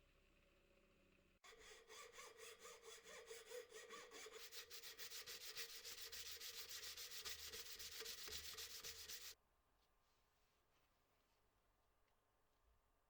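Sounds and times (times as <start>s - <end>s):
saw rasping through wood: 1.4s - 9.4s.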